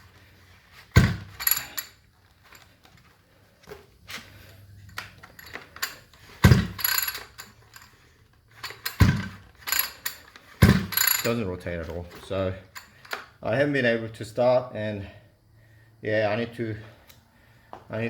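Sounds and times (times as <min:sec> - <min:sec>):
pull-starter clunk and rattle: 0:05.4 - 0:07.4, 0:08.6 - 0:11.3.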